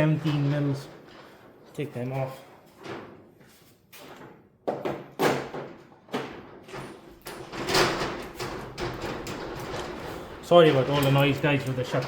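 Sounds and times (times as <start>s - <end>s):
shutters rattling and banging: 0.0s - 3.4s, 4.0s - 12.0s.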